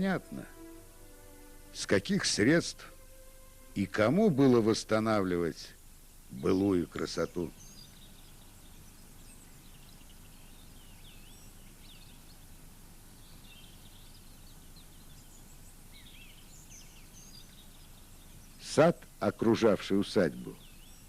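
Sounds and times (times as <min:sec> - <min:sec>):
birds chirping: 0:00.0 - 0:21.0
low background noise: 0:00.0 - 0:21.0.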